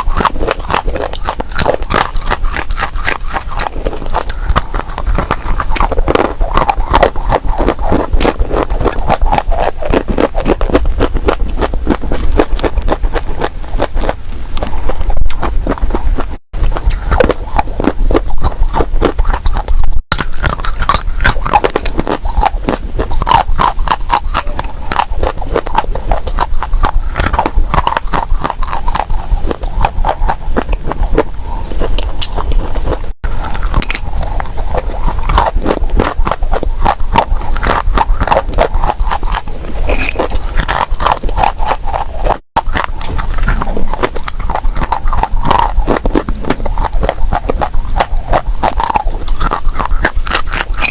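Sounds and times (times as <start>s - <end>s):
crunching and chewing: 0.0s - 50.9s.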